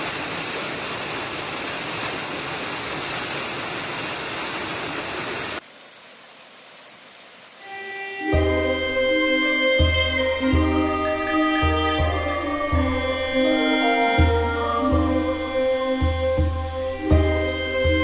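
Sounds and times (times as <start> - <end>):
faint hiss: 0.0 - 18.0
waterfall rushing: 0.0 - 18.0
music: 7.7 - 18.0.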